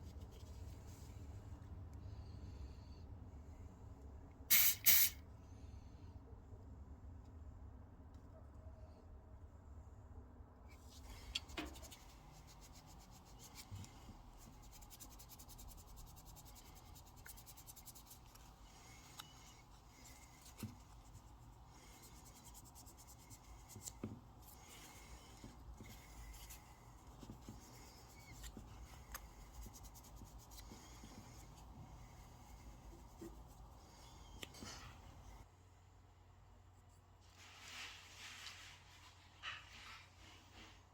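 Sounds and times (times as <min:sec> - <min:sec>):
faint rubbing and scratching: 0:00.0 - 0:01.7, 0:10.7 - 0:35.5, 0:36.8 - 0:40.9.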